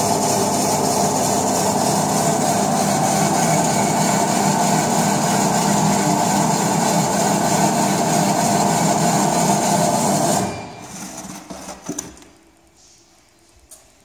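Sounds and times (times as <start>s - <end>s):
electric chopping machine running: 0.0s - 10.5s.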